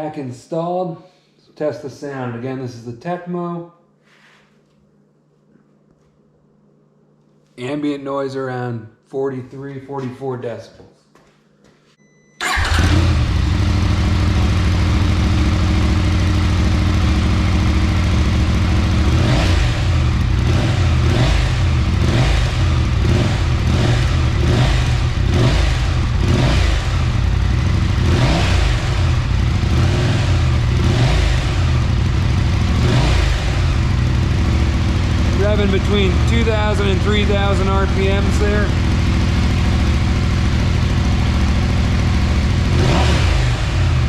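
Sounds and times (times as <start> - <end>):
motorcycle engine idling: 12.4 - 44.0
motorcycle engine revving: 12.4 - 44.0
motorcycle engine starting: 12.4 - 44.0.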